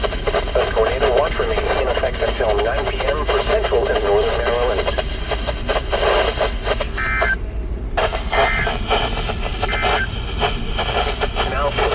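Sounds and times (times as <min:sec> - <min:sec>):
crackling radio static: 0:00.0 - 0:11.9
two-tone digital bursts: 0:08.3 - 0:08.8, 0:09.7 - 0:10.1.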